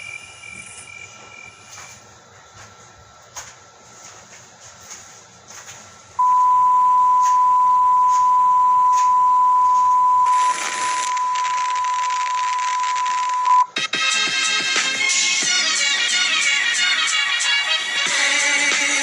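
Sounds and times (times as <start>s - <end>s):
steady test tone beep: 6.2s - 13.8s
static hiss: 10.2s - 13.8s.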